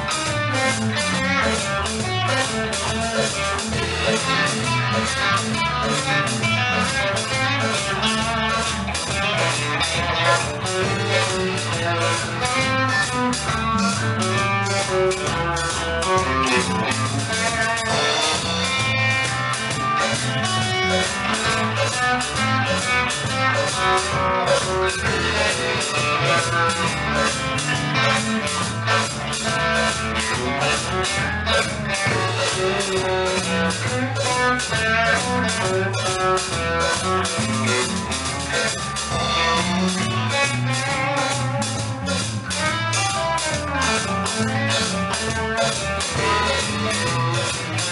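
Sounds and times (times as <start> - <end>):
drum kit beat: 0.0 - 47.9
electric guitar: 0.0 - 47.9.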